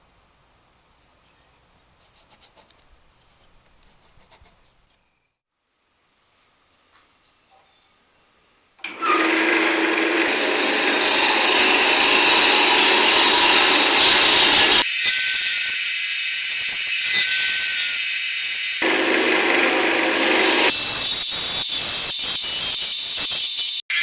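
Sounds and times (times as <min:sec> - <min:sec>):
power tool hissing under load: 0:09.0 - 0:23.8.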